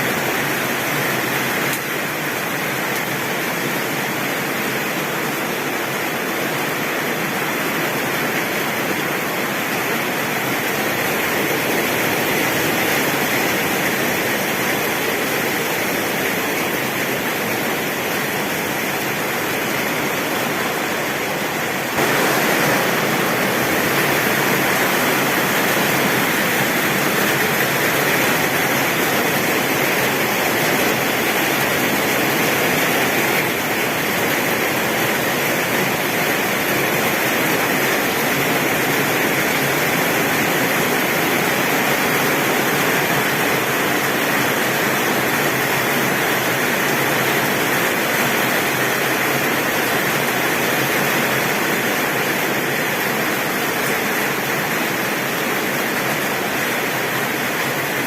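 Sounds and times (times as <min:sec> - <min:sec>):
heavy rain falling: 0:00.0 - 0:58.0.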